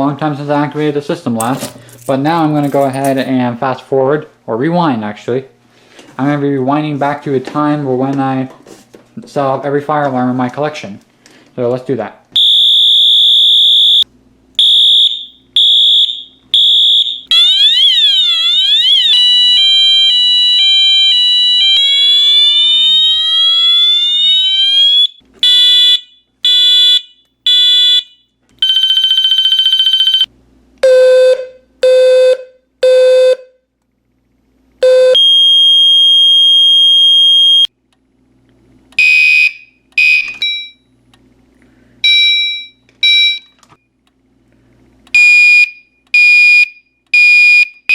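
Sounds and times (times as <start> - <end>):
fire alarm horns and sirens: 12.4 - 33.6, 34.8 - 37.7, 39.0 - 40.8, 45.2 - 47.9.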